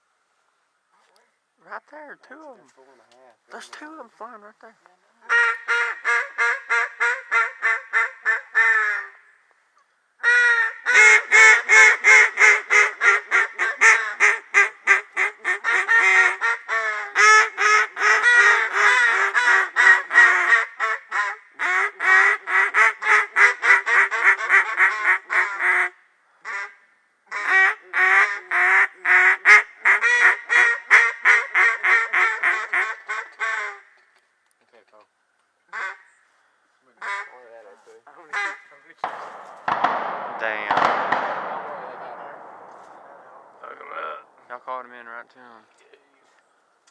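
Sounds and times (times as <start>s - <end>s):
duck call quacks: 5.3s - 9.2s, 10.2s - 34.0s, 35.7s - 36.1s, 37.0s - 37.5s, 38.2s - 39.2s.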